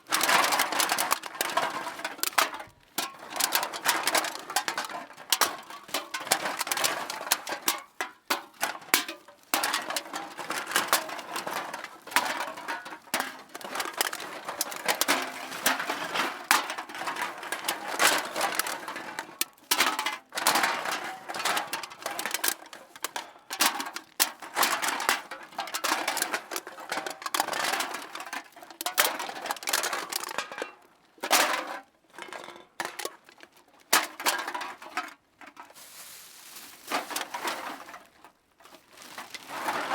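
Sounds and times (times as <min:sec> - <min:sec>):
aluminium cans clattering: 0:00.0 - 0:39.9
bag rustling: 0:35.7 - 0:39.9.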